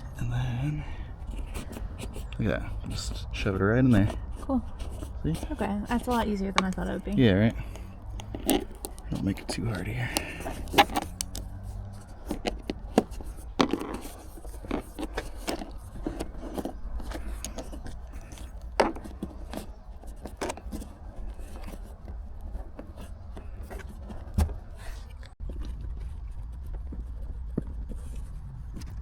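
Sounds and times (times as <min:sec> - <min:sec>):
hands scraping and rubbing trim: 0:00.0 - 0:29.0
plastic trim snapping: 0:04.1 - 0:24.9.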